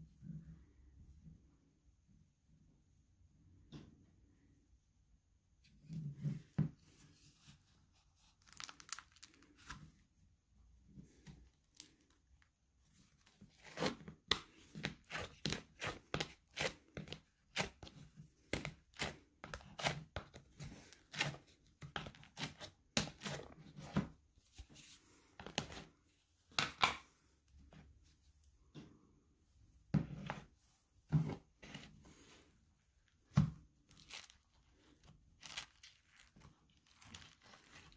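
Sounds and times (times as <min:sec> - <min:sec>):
slime squishing: 0:07.8 - 0:10.0, 0:11.1 - 0:24.0, 0:31.7 - 0:37.9.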